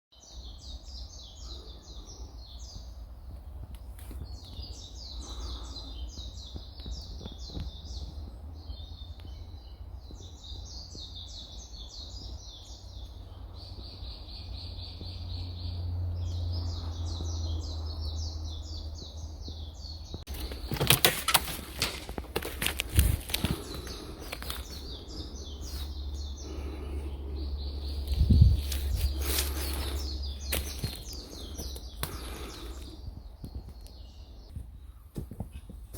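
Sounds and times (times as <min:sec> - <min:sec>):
birds chirping: 0:00.1 - 0:35.9
loud sharp knocks and rustles: 0:20.2 - 0:24.7
steady low rumble: 0:22.0 - 0:35.1.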